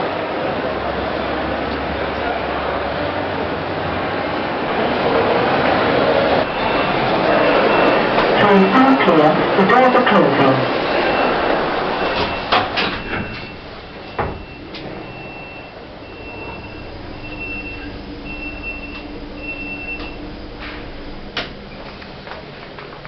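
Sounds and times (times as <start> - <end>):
lift doors sliding shut: 4.3 - 23.0
high warning beep: 6.5 - 21.8
low hum: 10.6 - 23.0.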